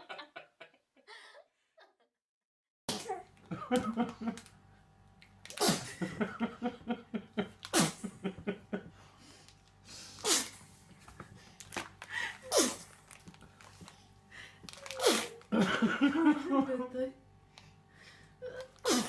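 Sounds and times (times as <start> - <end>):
baby sneezing: 2.9 - 3.2, 5.6 - 5.9, 10.2 - 10.6, 12.5 - 12.9, 15.0 - 15.4.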